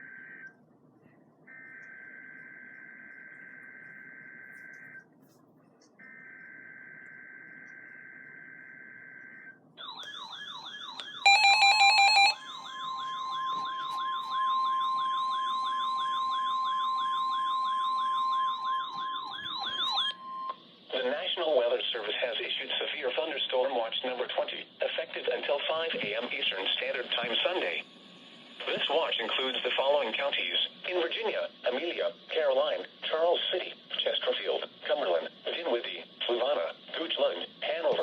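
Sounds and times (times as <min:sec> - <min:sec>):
steady warning tone: 0:06.0 - 0:21.1
electronic alert siren warbling: 0:06.9 - 0:20.5
loud beep: 0:11.2 - 0:20.5.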